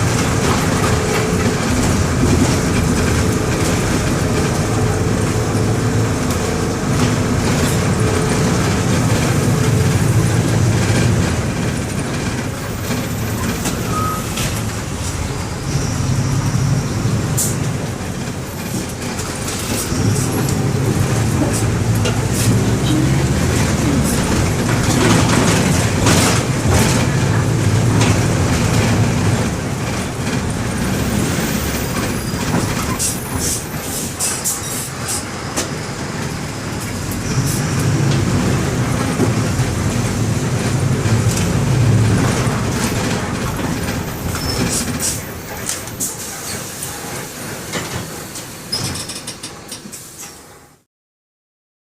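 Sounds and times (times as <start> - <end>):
bus diesel engine running: 0.0 - 50.8
rattles and clicks: 17.4 - 30.8.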